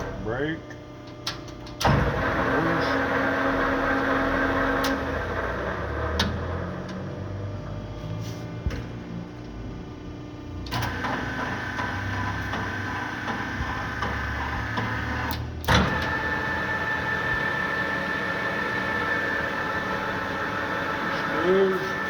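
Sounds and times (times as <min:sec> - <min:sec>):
lathe whining: 0:01.8 - 0:07.8, 0:10.8 - 0:22.0.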